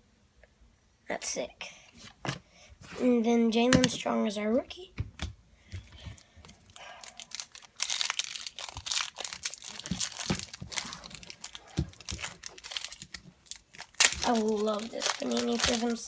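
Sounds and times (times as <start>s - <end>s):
wrapper crinkling and tearing: 6.7s - 16.0s.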